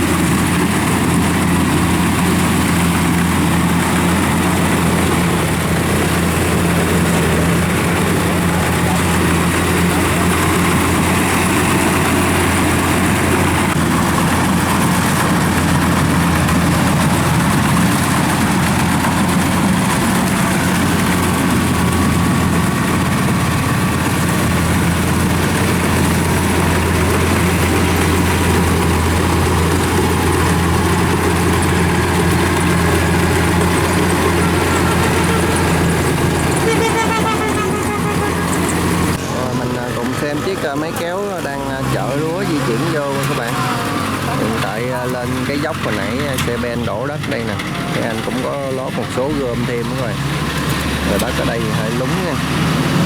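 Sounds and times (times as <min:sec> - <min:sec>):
diesel engine running steadily: 0:00.0 - 0:53.0.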